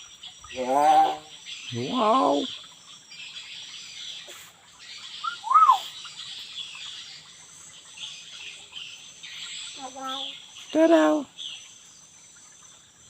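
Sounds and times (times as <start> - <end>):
insect chirring: 0.0 - 13.0
bird whistling: 5.2 - 6.0.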